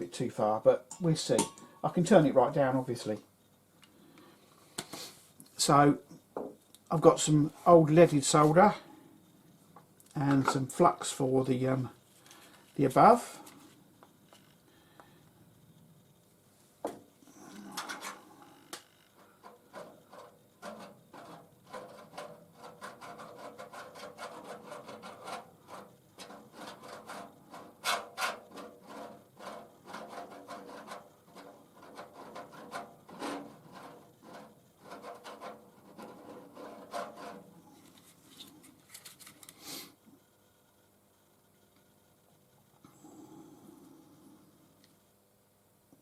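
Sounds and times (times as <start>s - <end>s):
scraping on copper: 17.3s - 38.6s.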